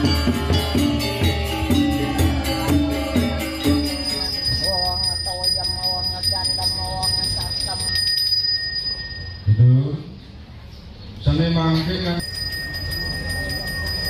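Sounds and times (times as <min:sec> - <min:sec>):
pitched percussion music: 0:00.0 - 0:09.3, 0:12.2 - 0:14.0.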